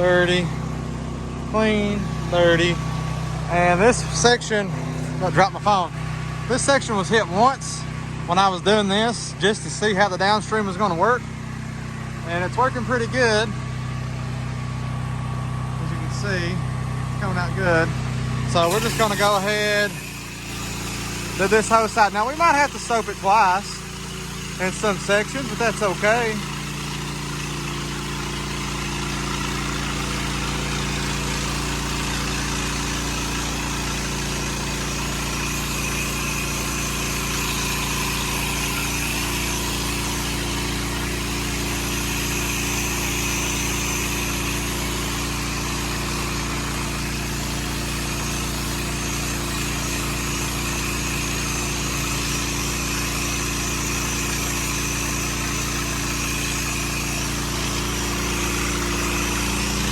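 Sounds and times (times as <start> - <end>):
pressure washer engine running: 0.0 - 59.9
water spray hissing: 18.5 - 59.9.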